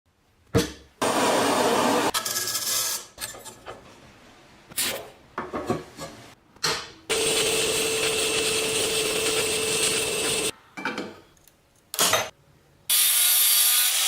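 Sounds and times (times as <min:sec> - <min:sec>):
tool rasping and scraping: 0:07.1 - 0:10.5.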